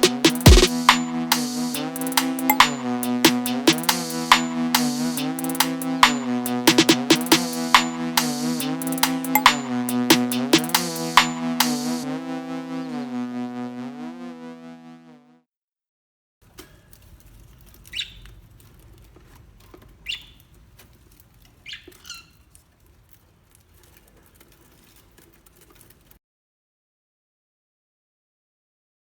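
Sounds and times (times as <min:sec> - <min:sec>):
electronic music: 0:00.0 - 0:15.3
bird chirping: 0:17.9 - 0:18.4, 0:20.0 - 0:20.5, 0:21.6 - 0:22.5.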